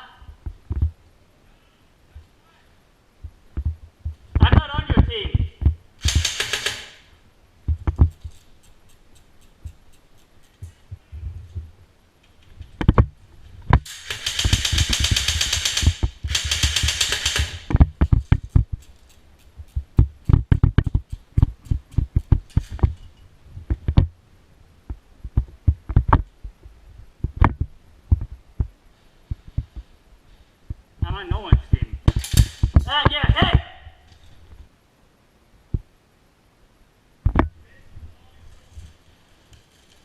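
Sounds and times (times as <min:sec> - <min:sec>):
sharp clicks and knocks: 0:03.2 - 0:07.1, 0:07.7 - 0:24.1, 0:24.8 - 0:29.8, 0:31.6 - 0:33.2
airsoft gun full-auto bursts: 0:06.0 - 0:07.1, 0:13.8 - 0:17.8.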